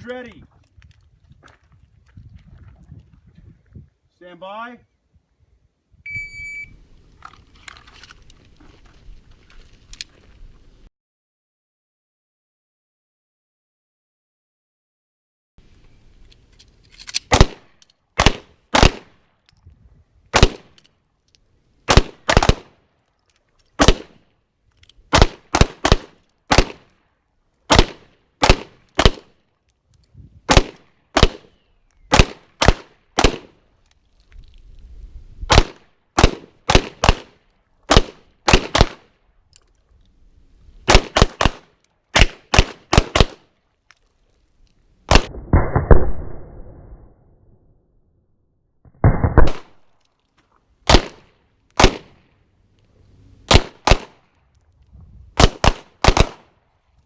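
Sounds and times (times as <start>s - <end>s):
pistol shots: 17.3s - 19.2s, 20.3s - 20.8s, 21.9s - 22.8s, 23.8s - 24.2s, 25.1s - 26.9s, 27.7s - 29.4s, 30.5s - 31.5s, 32.1s - 33.6s, 35.5s - 39.1s, 40.9s - 43.5s, 49.0s - 49.9s, 50.9s - 52.2s, 53.5s - 54.2s, 55.4s - 56.5s.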